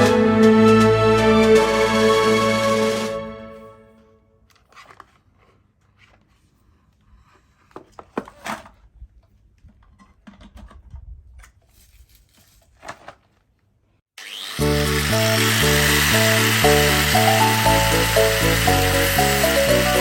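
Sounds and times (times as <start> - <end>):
music: 0.0 - 4.3, 14.6 - 20.0
loud hiss: 14.6 - 20.0.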